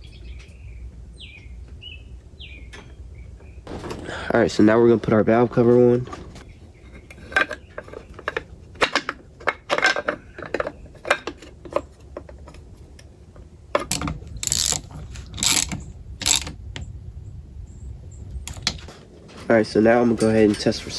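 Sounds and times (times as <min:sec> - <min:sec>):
metal tools clinking: 0:13.9 - 0:16.6, 0:20.0 - 0:20.9
ratchet wrench runs: 0:13.9 - 0:16.6.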